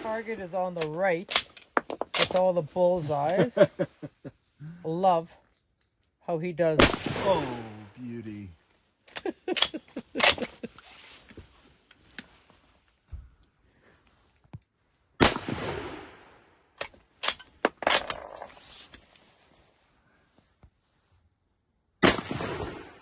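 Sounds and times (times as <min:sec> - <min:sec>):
rifle shot with echo: 0:06.8 - 0:07.8, 0:15.2 - 0:16.3, 0:22.0 - 0:23.0
sharp gunshot cracks: 0:06.8 - 0:07.8, 0:15.2 - 0:16.3, 0:22.0 - 0:23.0.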